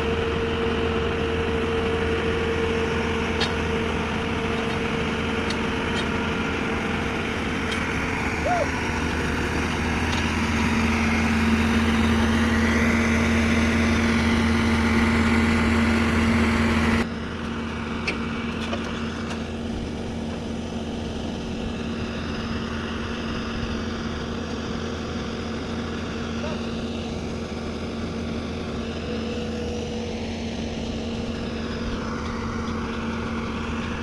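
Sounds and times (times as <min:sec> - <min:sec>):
heavy machinery engine humming: 0:00.0 - 0:34.0.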